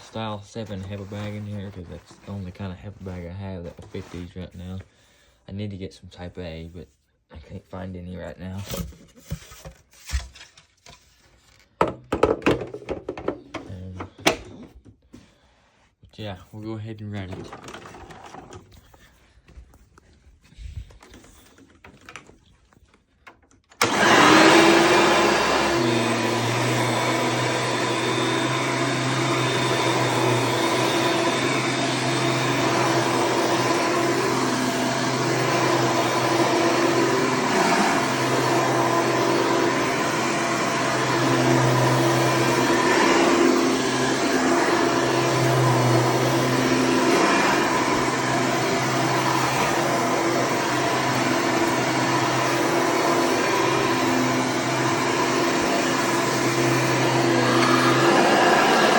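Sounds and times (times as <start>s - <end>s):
vacuum cleaner motor running: 23.8s - 58.9s.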